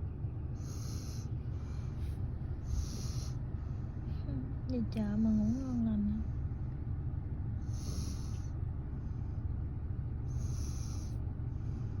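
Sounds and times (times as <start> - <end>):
baby snoring: 2.7 - 3.4, 7.7 - 8.4, 10.3 - 11.2.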